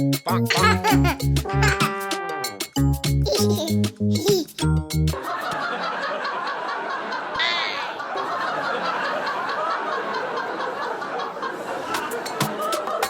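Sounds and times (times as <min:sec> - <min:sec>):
high-pitched laugh or cry: 0:00.3 - 0:02.0, 0:03.3 - 0:04.6, 0:07.2 - 0:08.5
people laughing: 0:00.3 - 0:02.0, 0:03.3 - 0:04.5, 0:05.2 - 0:13.0.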